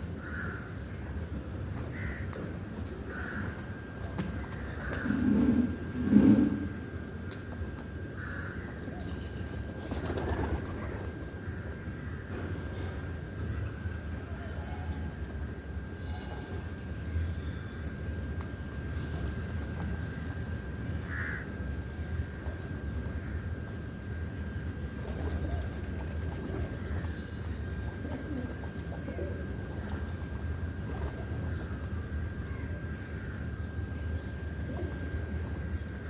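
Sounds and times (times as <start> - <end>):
insect chirping rhythmically: 9.4 - 36.0.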